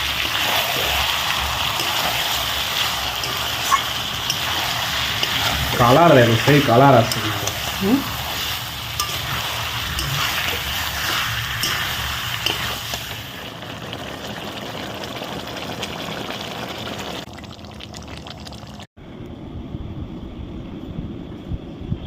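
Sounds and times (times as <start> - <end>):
curry sizzling in a pan: 0.0 - 17.3
low rumble: 19.0 - 22.0.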